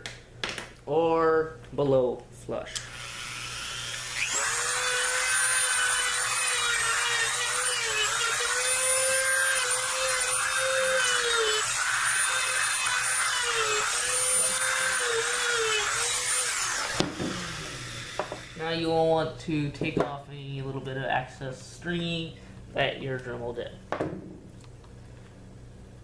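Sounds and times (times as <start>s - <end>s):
rotary tool sanding plastic: 2.8s - 18.9s.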